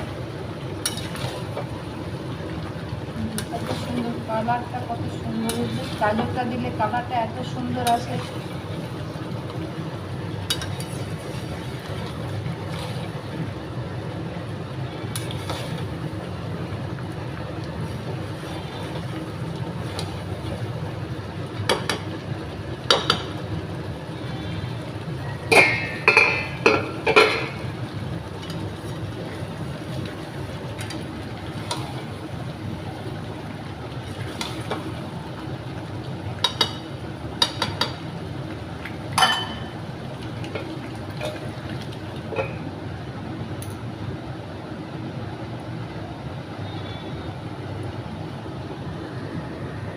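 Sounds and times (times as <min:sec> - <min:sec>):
utensil stirring simmering curry: 0:07.4 - 0:25.2, 0:27.8 - 0:39.2
utensil clinking against pot: 0:25.5 - 0:27.6, 0:39.1 - 0:39.7.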